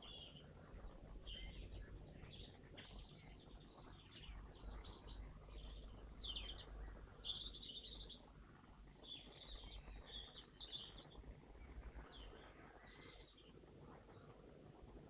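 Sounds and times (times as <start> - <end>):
low steady background rumble: 0.0 - 15.0
songbirds chirping: 0.0 - 15.0.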